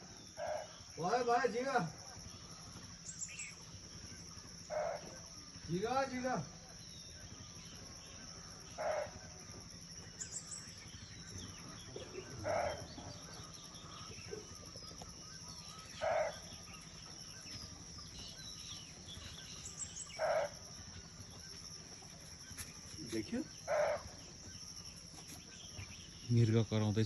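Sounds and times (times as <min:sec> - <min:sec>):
deer calling: 0:11.8 - 0:17.5.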